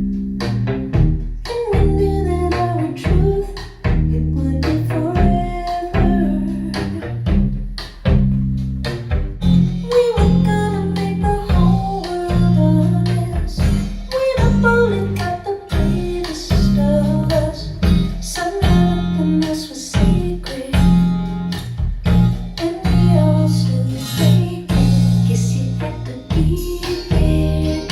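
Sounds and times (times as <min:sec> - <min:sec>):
bass line: 0:00.0 - 0:27.9
plucked guitar: 0:00.0 - 0:27.9
person singing: 0:01.5 - 0:07.2, 0:09.8 - 0:21.0, 0:22.6 - 0:27.9.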